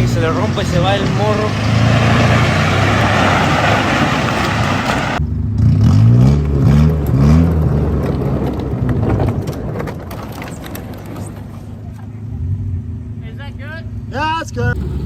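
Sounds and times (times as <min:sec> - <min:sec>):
car engine revving: 0:00.0 - 0:09.8, 0:14.7 - 0:15.0
road and wind noise: 0:00.0 - 0:15.0.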